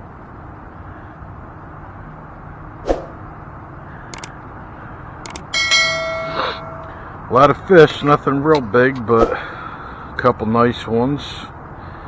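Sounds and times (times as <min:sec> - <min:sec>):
outdoor background noise: 0:00.0 - 0:12.0
faint clicks: 0:04.1 - 0:04.4
ringing metallic clang: 0:05.5 - 0:07.1.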